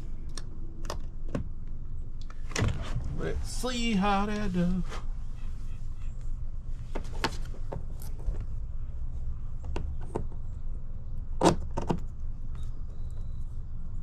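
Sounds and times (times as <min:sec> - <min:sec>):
low rumble: 0:02.6 - 0:06.8.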